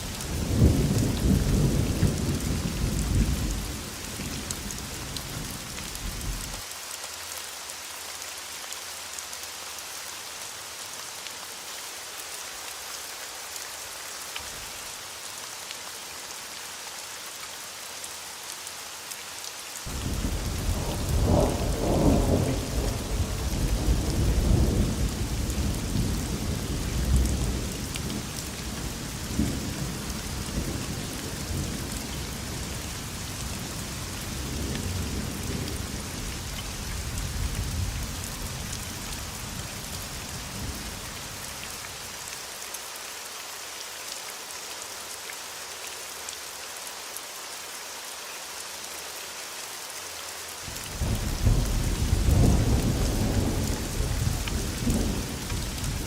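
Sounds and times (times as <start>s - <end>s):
steady rain hiss: 0.0s - 56.0s
thunder rumbling: 19.9s - 27.6s, 51.0s - 56.0s.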